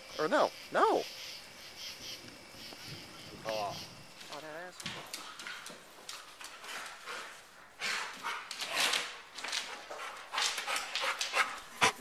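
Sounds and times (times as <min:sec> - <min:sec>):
dogs huffing and barking: 0:05.0 - 0:12.0.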